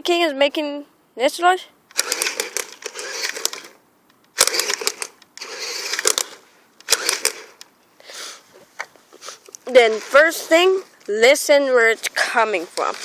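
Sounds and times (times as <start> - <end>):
toy truck gears whirring: 1.9 - 7.7.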